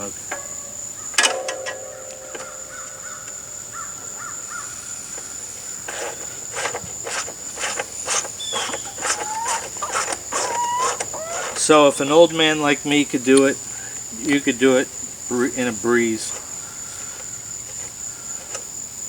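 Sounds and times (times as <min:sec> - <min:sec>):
high insect trill: 0:00.0 - 0:19.0
bird calling sharply: 0:08.0 - 0:12.8.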